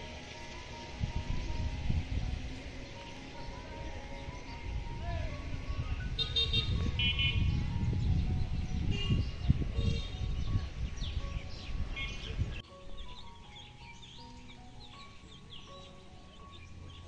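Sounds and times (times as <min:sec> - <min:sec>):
birds chirping: 0:00.0 - 0:17.0
street traffic rumbling: 0:00.0 - 0:17.0
car horn honks: 0:06.1 - 0:07.6, 0:08.8 - 0:10.3.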